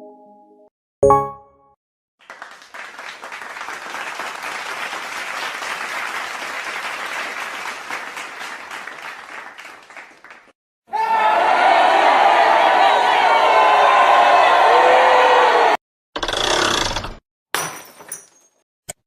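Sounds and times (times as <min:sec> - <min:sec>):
crowd applause: 0:02.2 - 0:15.8.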